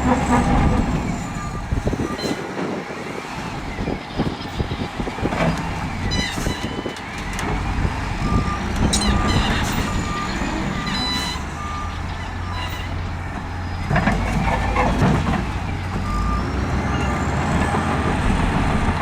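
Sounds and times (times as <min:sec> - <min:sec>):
diesel engines running: 0:00.0 - 0:19.0
reversing alarm beeping: 0:00.1 - 0:02.5, 0:06.0 - 0:14.8
clanking and rattling: 0:05.2 - 0:16.4.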